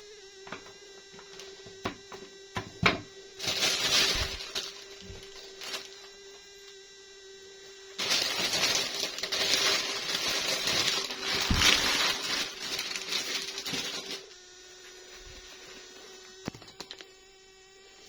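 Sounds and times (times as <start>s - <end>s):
packaging rustling and crinkling: 2.8s - 6.2s, 8.0s - 14.3s, 14.9s - 17.1s
small clicks: 16.3s - 17.2s.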